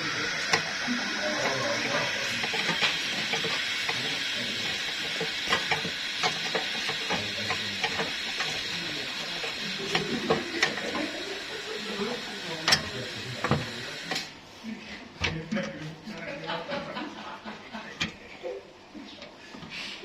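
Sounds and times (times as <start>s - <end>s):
steady hiss: 0.0s - 14.4s.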